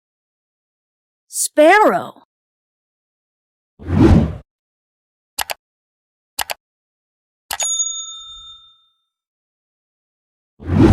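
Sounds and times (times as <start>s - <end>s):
double clicks: 6.4s - 6.6s
bell-like ding: 7.6s - 9.1s.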